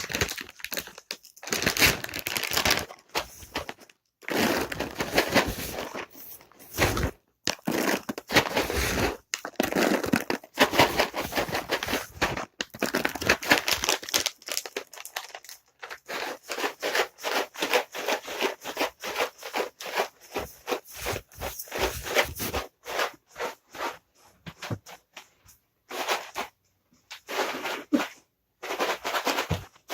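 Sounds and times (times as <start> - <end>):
cat treats rattling in package: 0.0 - 6.0, 7.5 - 23.8.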